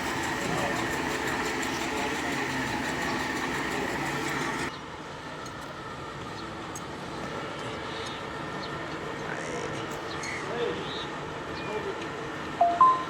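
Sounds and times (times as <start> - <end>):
mechanical engine running noise: 0.0 - 4.7.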